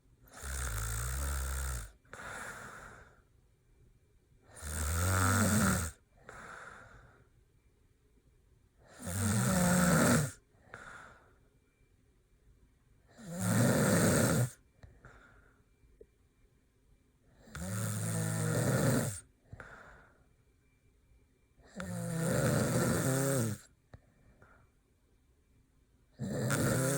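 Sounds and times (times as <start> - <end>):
man snoring loudly: 0.3 - 2.7, 4.5 - 6.0, 8.9 - 10.4, 13.2 - 14.6, 17.5 - 19.2, 21.7 - 23.7, 26.2 - 26.9
faint breathing: 1.8 - 3.4, 6.1 - 7.4, 10.4 - 11.9, 14.7 - 16.0, 19.4 - 20.8, 23.9 - 25.0.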